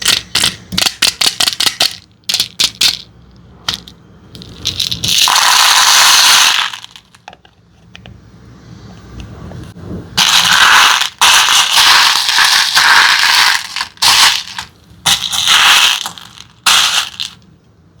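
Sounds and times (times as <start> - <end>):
loud rattling crackling noise: 3.7 - 7.2, 10.2 - 17.4.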